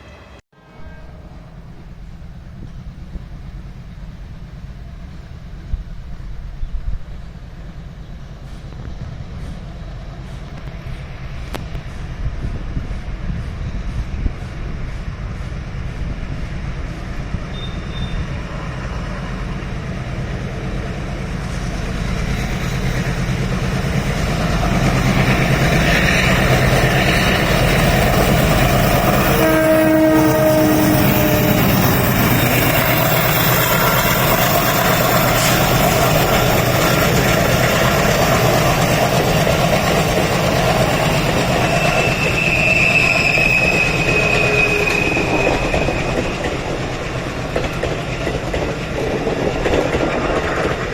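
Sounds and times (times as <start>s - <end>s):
diesel locomotive engine rumble: 0.0s - 50.9s
high steady tone: 24.6s - 46.5s
locomotive horn blasts: 28.6s - 32.3s.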